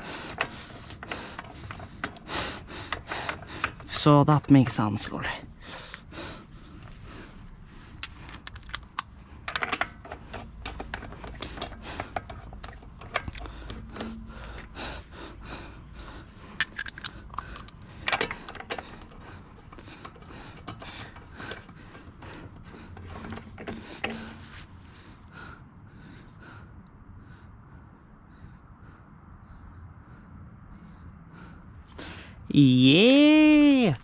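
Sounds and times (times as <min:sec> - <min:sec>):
metal tools clinking: 0:16.6 - 0:17.8.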